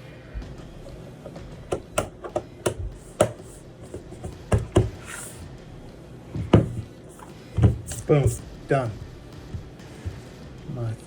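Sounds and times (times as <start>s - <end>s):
hardware parts clicking and tapping: 0.8s - 5.3s, 6.3s - 8.5s.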